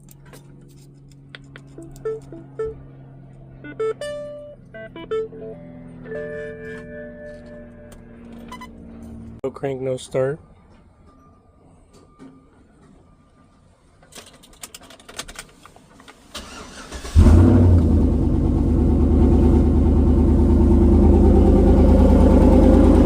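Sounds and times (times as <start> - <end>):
car engine starting and idling: 0.0 - 9.4, 14.1 - 23.0.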